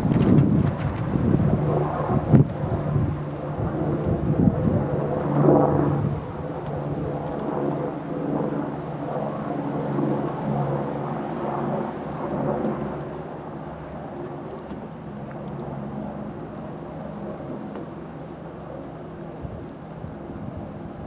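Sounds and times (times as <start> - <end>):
wind buffeting microphone: 0.0 - 12.9, 19.3 - 21.0.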